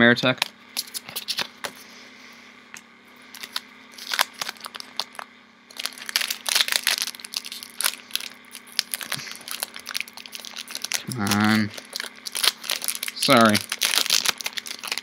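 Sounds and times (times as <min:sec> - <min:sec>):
foil wrapper crinkling and tearing: 0:03.3 - 0:15.0.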